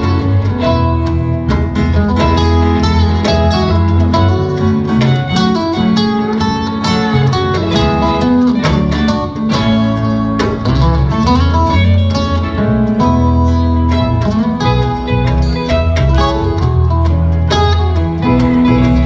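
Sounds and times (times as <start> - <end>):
electric guitar: 0.0 - 19.0
live rock band: 0.0 - 19.0.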